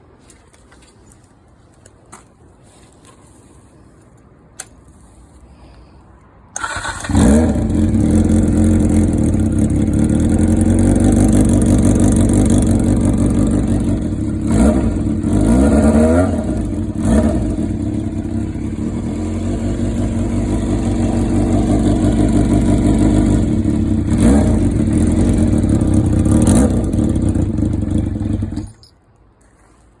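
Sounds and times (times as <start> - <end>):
motorcycle engine idling and revving: 6.6 - 28.9.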